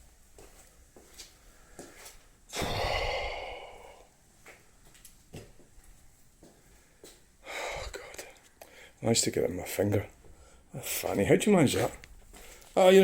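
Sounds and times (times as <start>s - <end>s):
person sighing heavily: 2.5s - 4.1s, 7.4s - 8.2s.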